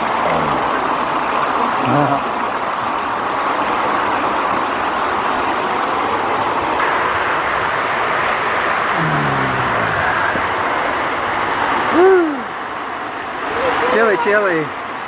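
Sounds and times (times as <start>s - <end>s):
waterfall pouring into pool: 0.0s - 15.0s
short falling voice sound: 8.9s - 10.6s.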